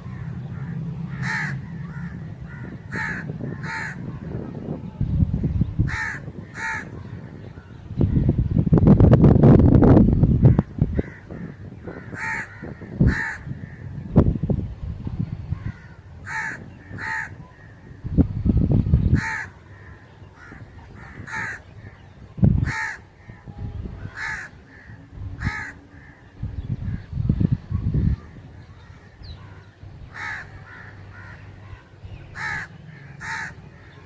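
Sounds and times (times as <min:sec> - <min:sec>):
low rumbles: 0:00.0 - 0:34.0
crow cawing: 0:00.1 - 0:04.1, 0:05.9 - 0:07.0, 0:11.0 - 0:13.8, 0:15.6 - 0:17.8, 0:19.2 - 0:22.0, 0:22.6 - 0:23.3, 0:24.1 - 0:26.2, 0:28.2 - 0:31.8, 0:32.4 - 0:33.9.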